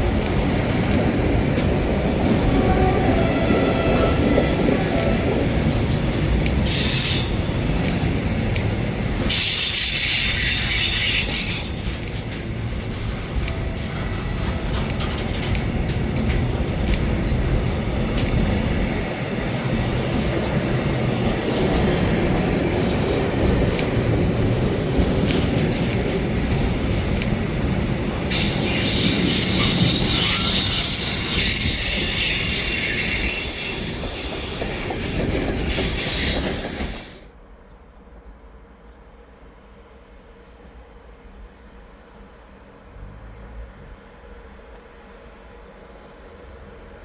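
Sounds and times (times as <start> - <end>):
wheels squealing on rail: 0.0 - 22.6, 28.3 - 37.3
train rumbling past: 0.0 - 47.0.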